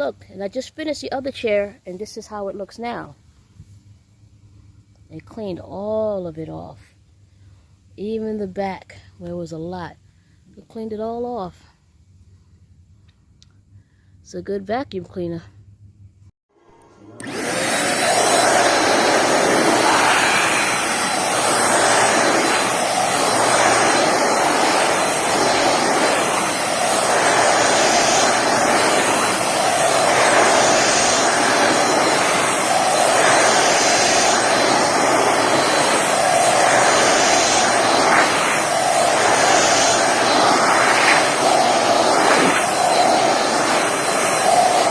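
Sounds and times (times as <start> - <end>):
handheld vacuum running: 17.2 - 44.9.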